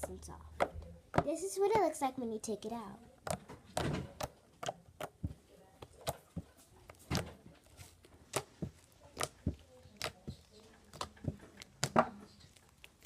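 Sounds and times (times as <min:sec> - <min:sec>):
slime squishing and popping: 0:03.2 - 0:13.0.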